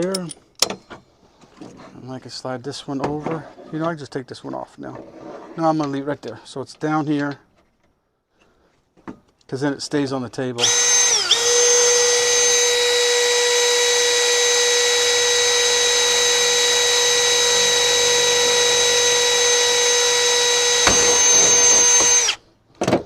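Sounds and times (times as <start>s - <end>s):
power drill whining: 10.6s - 22.5s
knocks: 20.7s - 22.2s.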